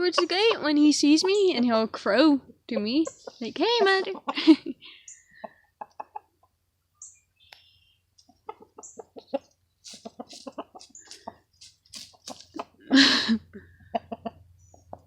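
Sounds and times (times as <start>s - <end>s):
rooster clucking softly: 5.4s - 6.6s, 8.2s - 12.7s, 13.9s - 15.0s.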